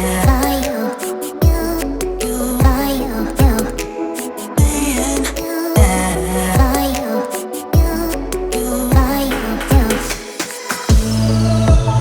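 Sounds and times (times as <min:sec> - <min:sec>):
electronic music with a beat: 0:00.0 - 0:12.0
synth melody: 0:00.0 - 0:12.0
deep bass kicks: 0:00.2 - 0:00.5, 0:02.6 - 0:03.7, 0:04.6 - 0:05.0, 0:05.8 - 0:06.8, 0:08.9 - 0:09.9, 0:10.9 - 0:12.0.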